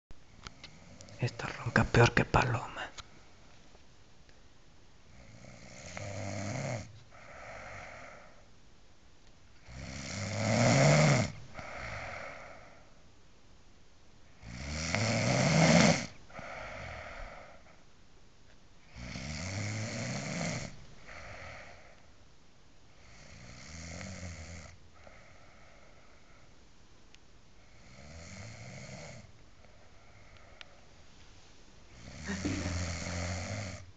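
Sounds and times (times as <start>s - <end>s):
woman snoring heavily: 5.1s - 8.4s, 9.6s - 12.8s, 14.4s - 17.6s, 18.9s - 21.9s, 27.8s - 29.3s, 32.0s - 33.9s
soft breaths: 7.0s - 8.6s, 11.5s - 13.1s, 16.3s - 18.0s, 20.9s - 22.3s, 24.9s - 26.8s, 29.4s - 33.9s.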